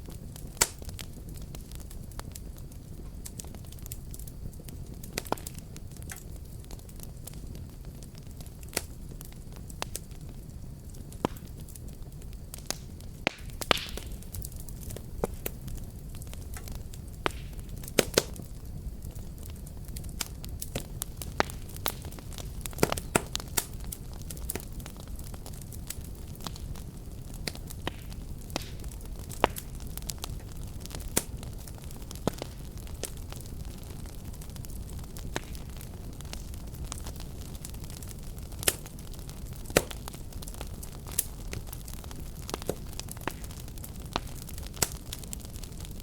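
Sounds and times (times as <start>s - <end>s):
wood fire crackling and popping: 0.0s - 46.0s.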